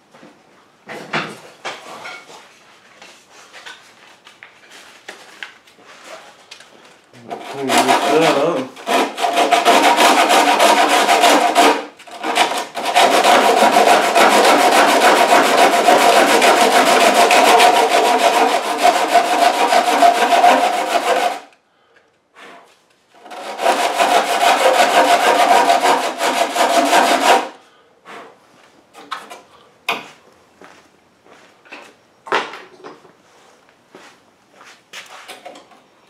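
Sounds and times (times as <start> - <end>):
wood being sanded: 7.2 - 21.5, 23.2 - 27.5.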